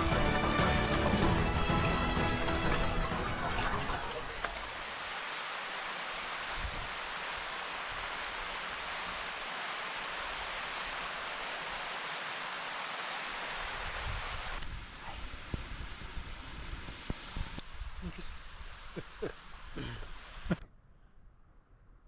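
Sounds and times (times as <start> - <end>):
waterfall rushing: 0.0 - 14.6.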